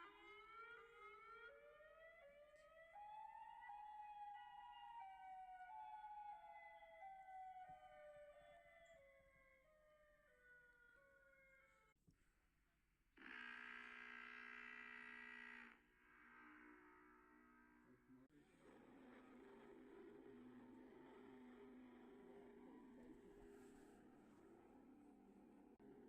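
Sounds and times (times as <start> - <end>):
faint siren-like horn tone: 16.0 - 18.0.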